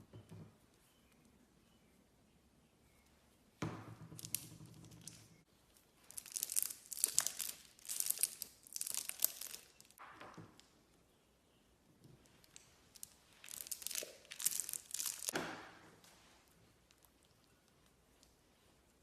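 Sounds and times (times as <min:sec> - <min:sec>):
slime crackling and popping: 0:06.0 - 0:10.0, 0:12.6 - 0:15.4.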